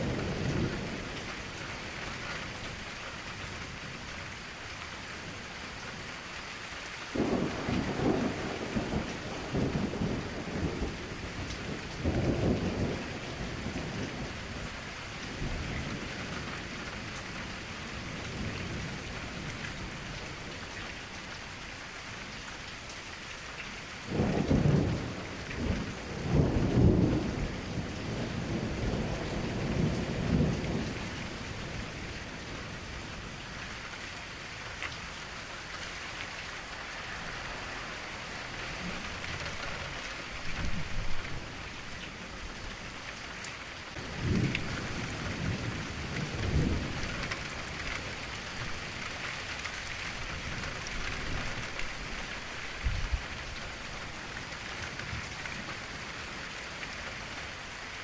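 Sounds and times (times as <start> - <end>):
steady rain: 0.0 - 58.0
thunder rumbling: 7.1 - 16.7, 24.1 - 33.8, 36.4 - 42.7, 43.9 - 55.7.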